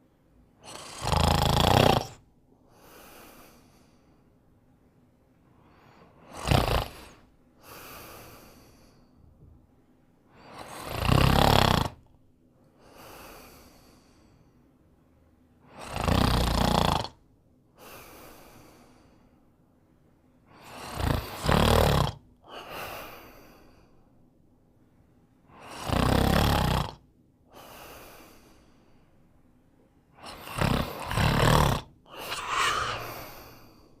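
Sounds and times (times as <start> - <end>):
dog snoring: 0.6 - 2.2, 6.2 - 8.8, 10.4 - 12.1, 15.7 - 17.2, 20.6 - 22.8, 25.5 - 27.0, 30.2 - 33.8
dog breathing softly: 32.1 - 34.0.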